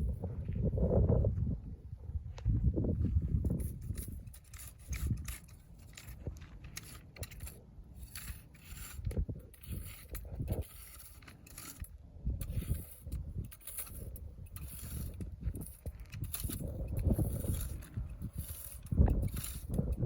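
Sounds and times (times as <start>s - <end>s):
scraping and rustling of dry weeds: 2.4s - 20.0s.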